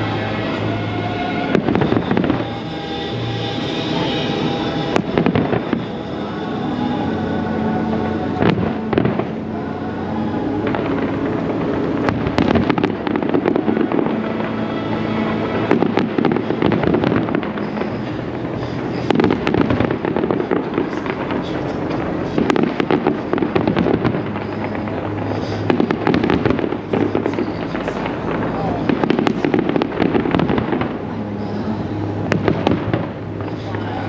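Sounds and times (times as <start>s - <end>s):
fireworks booming and crackling: 0.0s - 34.0s.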